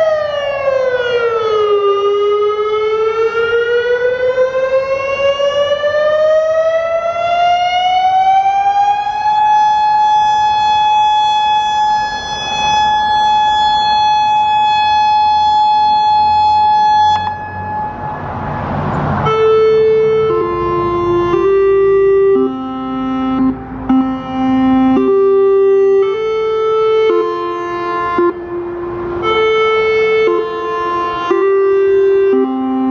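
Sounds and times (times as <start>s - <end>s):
warning siren rising: 0.0s - 32.9s
electronic chime notes: 17.1s - 21.6s
rush of noise: 17.2s - 21.2s.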